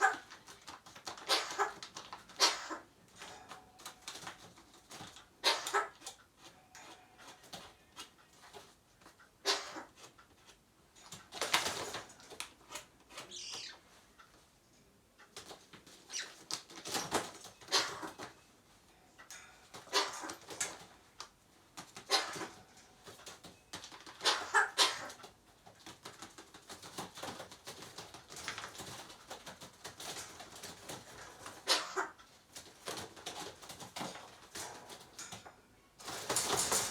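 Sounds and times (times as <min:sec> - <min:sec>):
magpie cough-like calls: 0:01.3 - 0:01.8, 0:02.4 - 0:02.9, 0:05.4 - 0:06.0, 0:09.4 - 0:10.0, 0:17.7 - 0:18.2, 0:19.9 - 0:20.4, 0:22.0 - 0:22.6, 0:24.2 - 0:25.2, 0:31.6 - 0:32.2.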